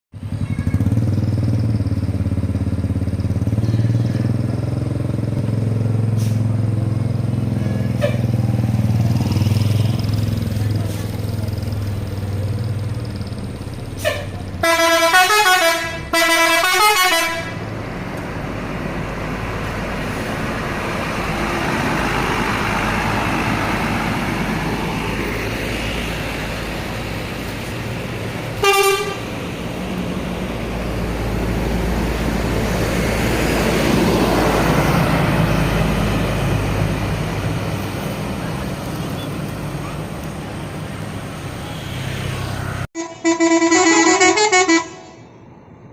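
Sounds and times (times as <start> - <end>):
bus engine: 0.1 - 45.9
traffic: 0.1 - 45.9
heavy vehicle passing: 0.2 - 45.9
multi-tone bus horn: 7.6 - 8.4, 14.0 - 17.7, 28.6 - 29.5, 42.9 - 45.4.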